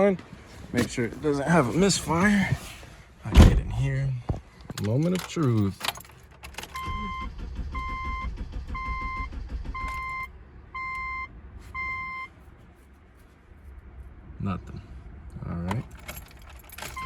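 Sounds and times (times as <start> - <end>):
dashboard warning chime beeping: 6.7 - 12.3.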